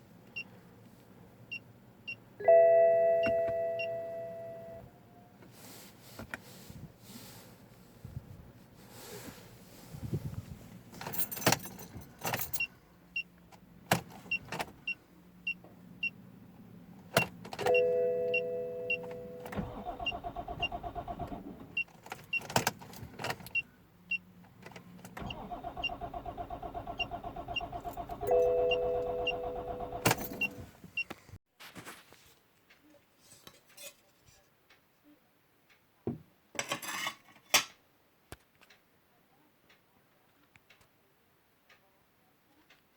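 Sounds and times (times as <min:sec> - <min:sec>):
car engine cranking buzz: 0:19.0 - 0:21.8, 0:25.2 - 0:30.7
chime-like tones: 0:28.3 - 0:29.2.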